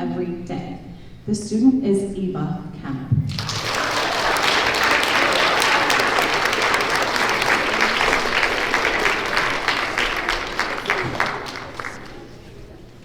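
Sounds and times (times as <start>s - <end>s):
children applauding: 3.3s - 12.6s.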